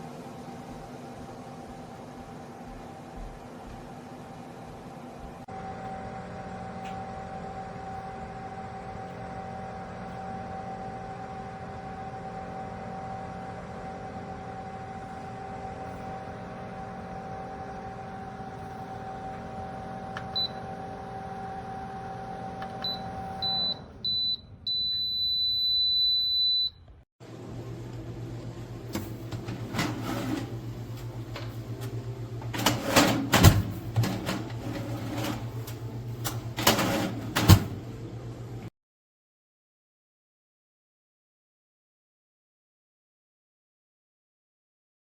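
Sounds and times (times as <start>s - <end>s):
convection fan humming: 0.0s - 26.5s, 27.2s - 38.7s
oven alert beeps: 17.3s - 26.9s.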